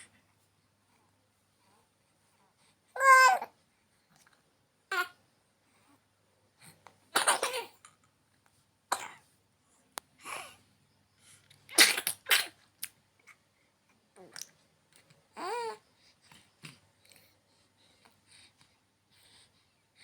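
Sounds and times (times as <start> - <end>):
young child coughing: 7.2 - 7.8, 8.9 - 9.2, 11.8 - 12.6.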